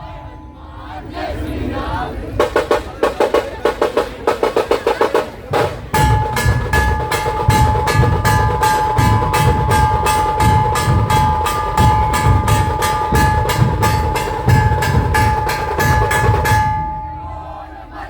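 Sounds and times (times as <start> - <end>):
steady ringing tone: 0.0 - 2.0, 5.9 - 18.0
sharp tasha drum strokes: 0.0 - 18.0
heavy dhol drum beats: 2.4 - 17.4.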